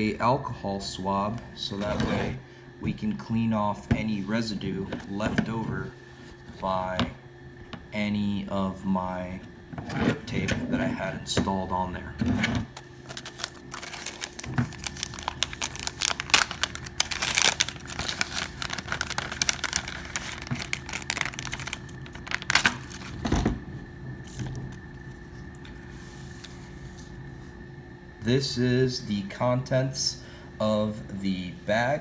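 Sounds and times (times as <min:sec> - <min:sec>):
faint steady hum: 0:00.0 - 0:32.0
plastic packaging crinkling and tearing: 0:12.7 - 0:23.3.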